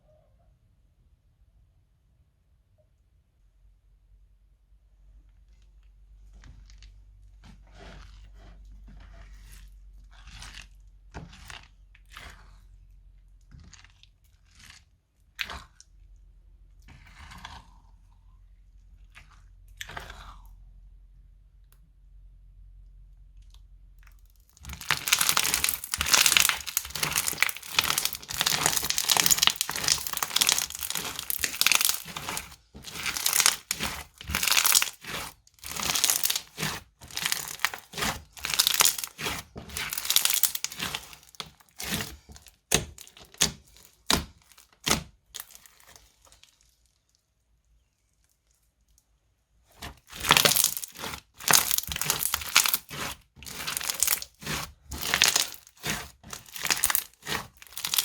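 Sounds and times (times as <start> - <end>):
slime crackling and crunching: 6.3 - 15.9, 24.0 - 47.2, 49.7 - 58.0.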